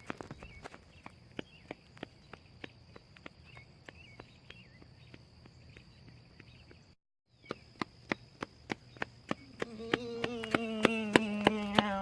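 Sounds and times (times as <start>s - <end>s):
bird chirps: 0.0s - 12.0s.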